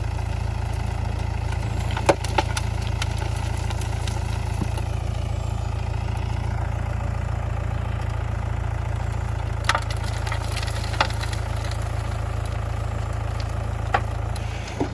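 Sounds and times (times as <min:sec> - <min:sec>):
diesel engine idling: 0:00.0 - 0:14.9.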